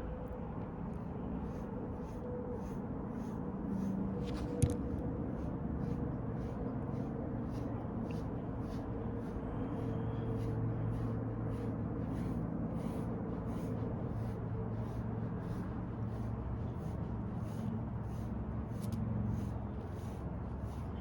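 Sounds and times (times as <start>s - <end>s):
steady low hum: 0.0s - 21.0s
brush swishing through dog fur: 1.5s - 21.0s.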